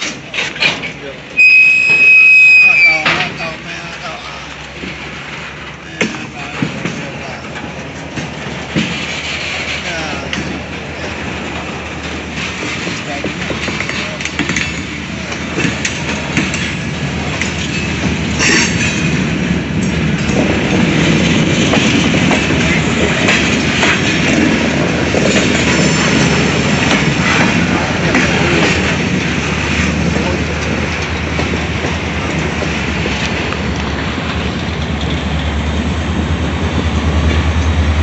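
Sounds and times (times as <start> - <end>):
train wheels clattering over rails: 0.0 - 2.3, 3.0 - 38.0
faint high wheel squeals: 1.4 - 3.2.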